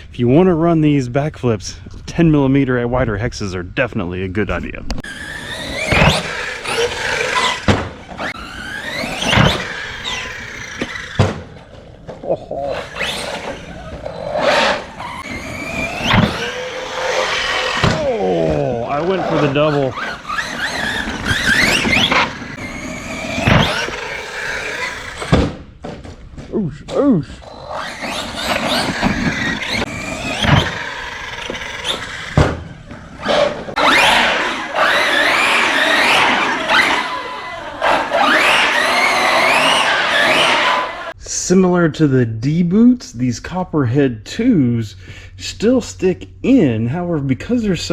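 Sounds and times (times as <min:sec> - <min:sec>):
loud rough rushing noise: 0:05.0 - 0:11.7, 0:12.7 - 0:25.4, 0:27.4 - 0:41.1
toy truck thumping on ground: 0:05.0 - 0:12.2, 0:12.8 - 0:18.6, 0:20.0 - 0:26.6, 0:27.5 - 0:34.2
electric motor whining: 0:05.0 - 0:25.4, 0:27.4 - 0:41.2.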